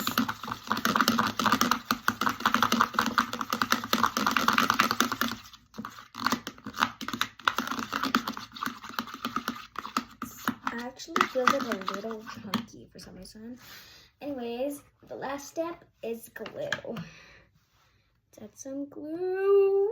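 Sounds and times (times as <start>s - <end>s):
foamy mixture stirred in bowl: 0.0s - 12.7s.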